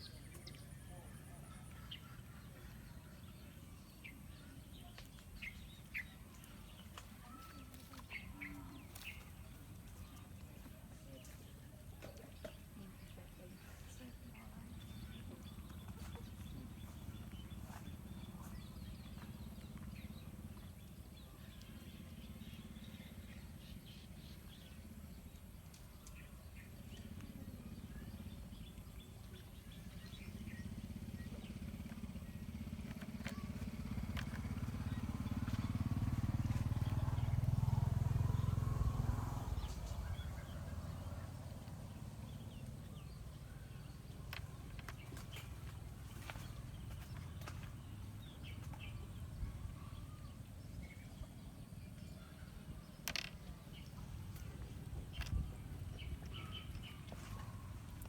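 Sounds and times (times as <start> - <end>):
vehicle passing with low rumble: 13.4 - 58.0.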